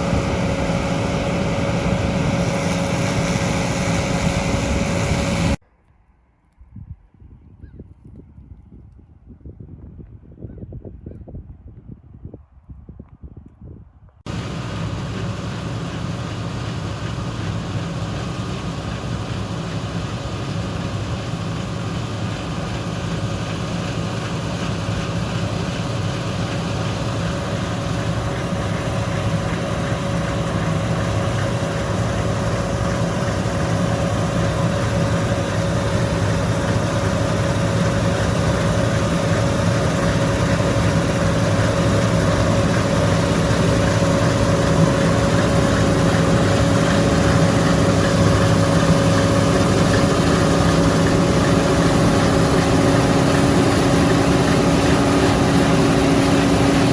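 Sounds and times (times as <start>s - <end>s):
farm machinery engine: 0.0s - 5.6s, 14.3s - 56.9s
higher machine hum: 0.0s - 5.6s, 14.3s - 56.9s.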